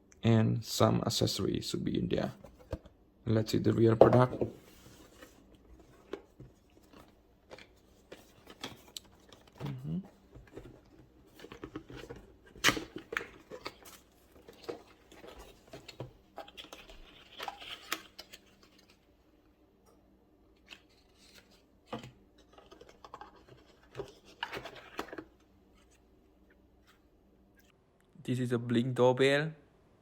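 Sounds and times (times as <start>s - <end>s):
packaging rustling and scraping: 4.5s - 19.1s.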